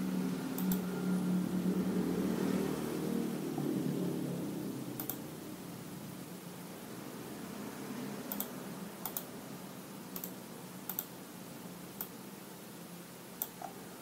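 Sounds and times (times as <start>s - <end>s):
faint room hum: 0.0s - 14.0s
computer mouse clicks: 0.6s - 0.8s, 5.0s - 5.2s, 8.3s - 9.3s, 10.2s - 11.1s, 12.0s - 12.2s, 13.4s - 13.8s.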